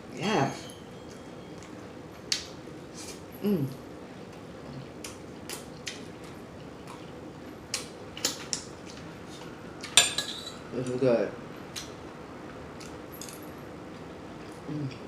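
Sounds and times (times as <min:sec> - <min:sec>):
person humming: 0:03.4 - 0:03.8, 0:14.7 - 0:15.0
chewing and lip smacking: 0:04.3 - 0:09.5.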